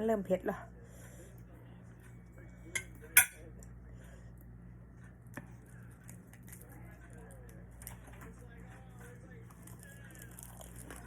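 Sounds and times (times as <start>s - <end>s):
low electrical hum: 0.0s - 11.0s
utensils clinking against a dish: 2.7s - 3.5s.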